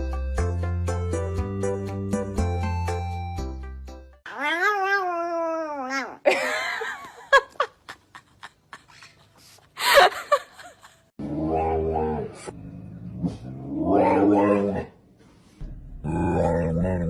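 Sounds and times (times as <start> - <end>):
background music: 0.0 - 4.2
cat meowing: 4.3 - 6.1.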